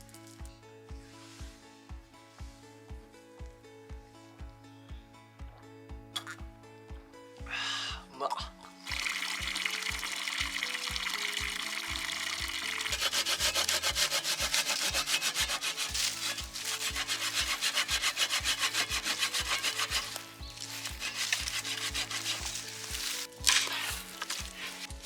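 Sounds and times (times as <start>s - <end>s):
background music with steady beat: 0.0s - 25.0s
hand saw cutting wood: 8.9s - 25.0s.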